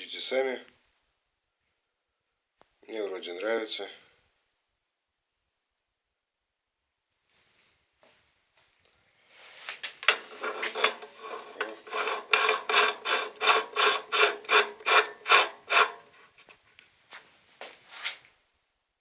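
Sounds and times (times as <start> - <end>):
metal tool scraping iron: 10.1 - 16.2.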